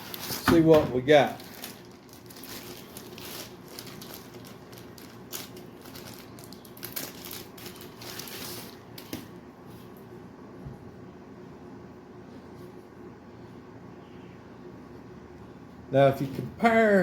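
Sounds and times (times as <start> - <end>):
packaging crinkling and rustling: 0.0 - 9.4.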